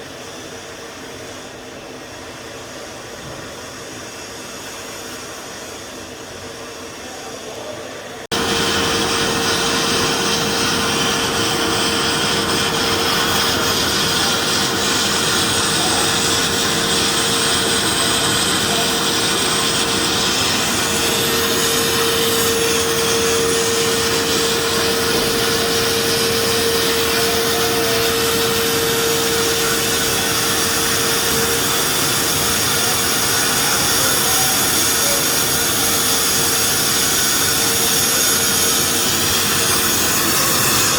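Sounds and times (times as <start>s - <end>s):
constant hum tone: 6.8s - 34.4s
loud blasting hiss: 8.3s - 40.9s
sandblasting air hiss: 8.3s - 40.9s.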